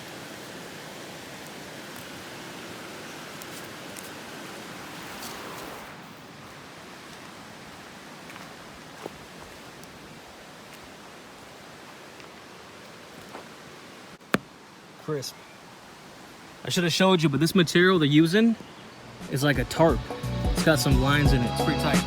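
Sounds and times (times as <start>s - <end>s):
steady background hiss: 0.0s - 20.9s.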